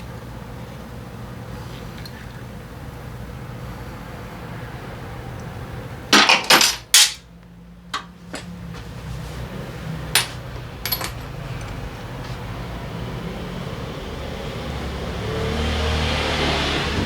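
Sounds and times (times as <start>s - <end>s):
metal tools clanking: 10.2s - 11.9s.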